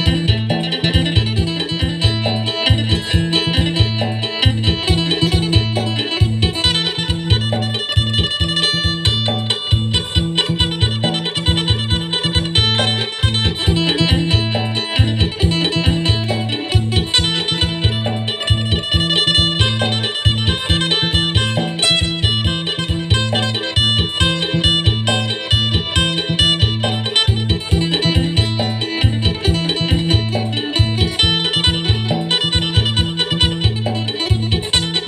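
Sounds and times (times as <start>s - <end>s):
plucked lute melody: 0.0s - 35.0s
pulsing low bass line: 0.0s - 35.0s.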